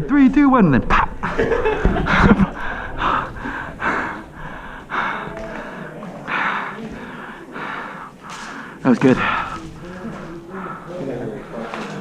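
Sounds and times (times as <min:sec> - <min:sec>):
person breathing hard: 0:02.0 - 0:11.0.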